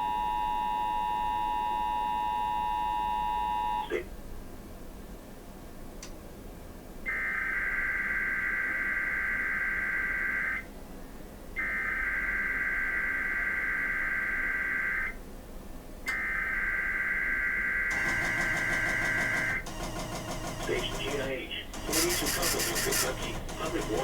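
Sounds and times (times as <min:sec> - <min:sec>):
harsh digital data tones: 0:20.6 - 0:24.0.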